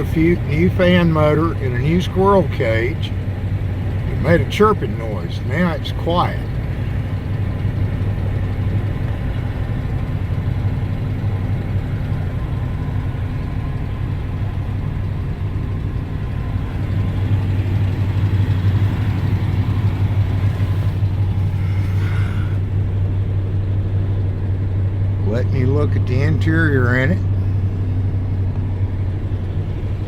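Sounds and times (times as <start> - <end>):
car engine idling: 0.0 - 30.0.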